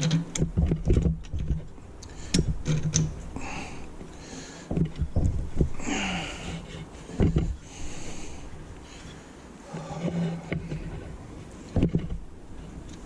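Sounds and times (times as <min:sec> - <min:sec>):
dull thuds: 0:04.7 - 0:08.4, 0:11.7 - 0:12.3.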